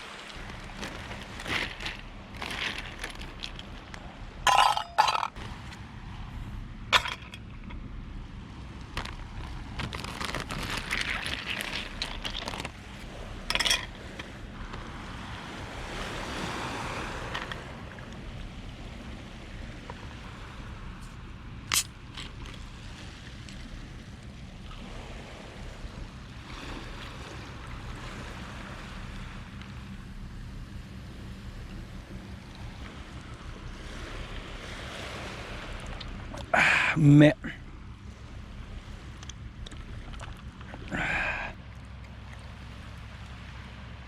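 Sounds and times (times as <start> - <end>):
waves washing on beach: 0.0 - 44.0.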